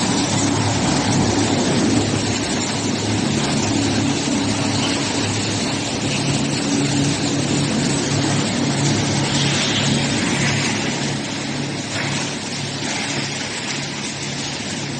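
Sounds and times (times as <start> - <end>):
constant rushing noise: 0.0 - 14.9
pulsing motor hum: 0.0 - 14.9.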